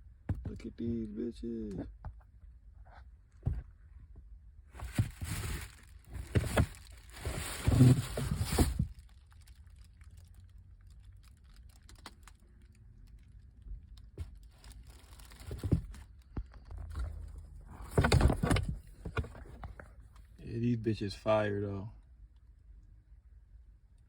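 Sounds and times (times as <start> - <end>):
packaging crinkling and rustling: 4.8 - 12.4, 14.0 - 19.8.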